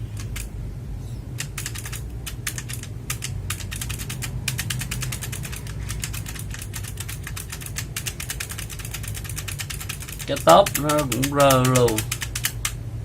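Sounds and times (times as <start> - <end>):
clicky keyboard keys pressed: 0.0 - 0.5, 1.4 - 12.8.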